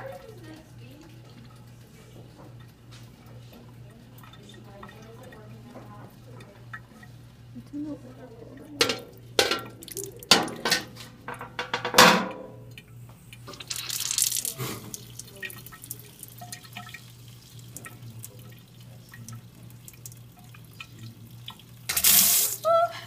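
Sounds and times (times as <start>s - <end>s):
faint water drips: 0.0s - 10.7s, 12.6s - 23.0s
water pouring and splashing: 8.1s - 11.1s, 13.2s - 22.9s.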